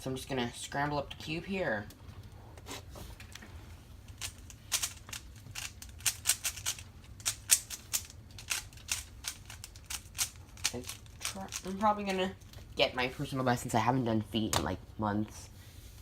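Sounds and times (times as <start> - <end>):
plastic puzzle cube clicking: 4.2 - 11.7.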